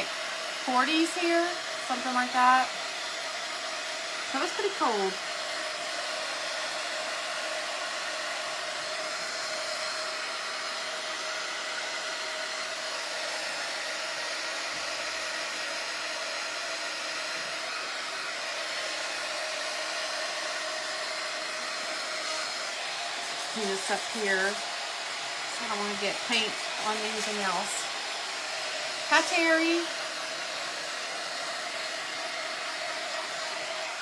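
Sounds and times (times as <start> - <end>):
electric blower whirring: 0.0 - 34.0.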